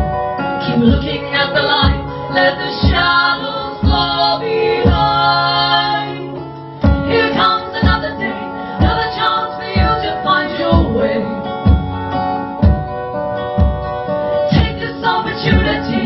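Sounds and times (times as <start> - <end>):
strummed acoustic guitars: 0.0 - 16.0
women singing: 0.6 - 11.8, 14.5 - 16.0
low beat: 10.7 - 14.9.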